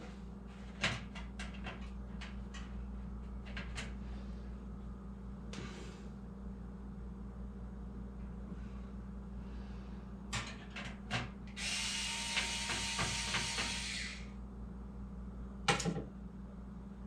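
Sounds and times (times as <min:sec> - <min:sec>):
powered screwdriver whirring: 0:11.6 - 0:14.3.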